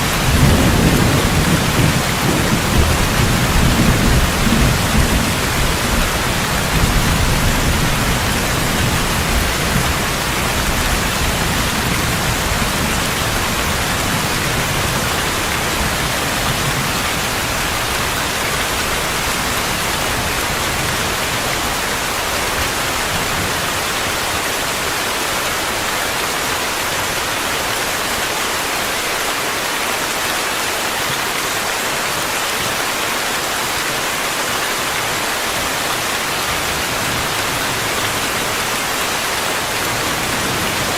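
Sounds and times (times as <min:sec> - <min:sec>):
steady rain: 0:00.0 - 0:40.9
low rumble of thunder: 0:00.2 - 0:17.9.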